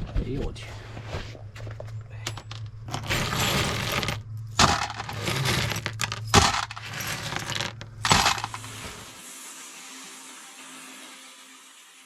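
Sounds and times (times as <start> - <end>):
small hard objects clinking: 2.2 - 9.1.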